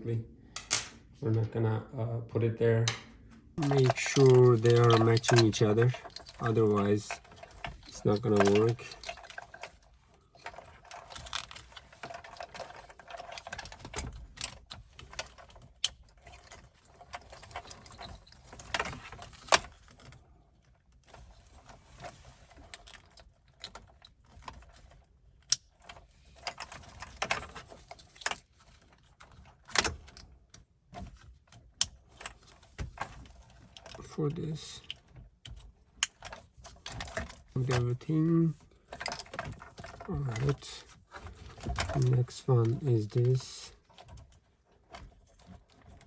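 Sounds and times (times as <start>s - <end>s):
cables rustling: 2.9s - 46.0s
plastic connectors clicking: 3.6s - 7.1s.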